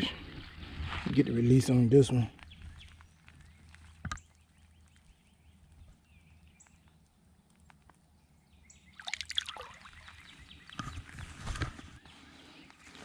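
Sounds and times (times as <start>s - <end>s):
faint water drips: 8.8s - 10.8s
fish splashing in water: 9.0s - 10.4s.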